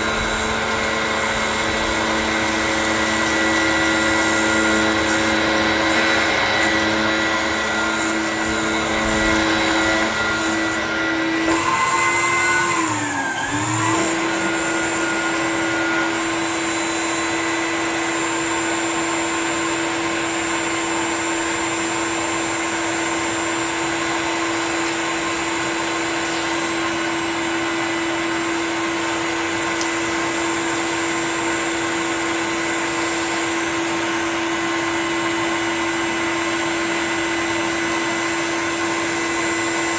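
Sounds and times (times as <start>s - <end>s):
upright vacuum cleaner running: 0.0s - 39.9s.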